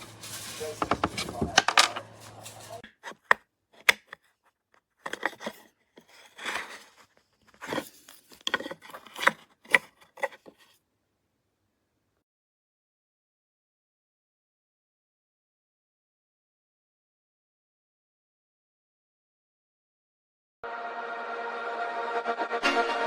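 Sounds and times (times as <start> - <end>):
wood scraping and rubbing: 0.0 - 3.2
wooden pieces clicking and knocking: 0.8 - 2.0.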